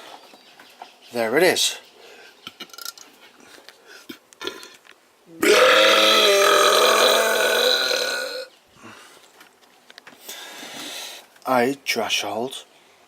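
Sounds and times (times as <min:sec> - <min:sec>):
person burping loudly: 0:05.3 - 0:08.5.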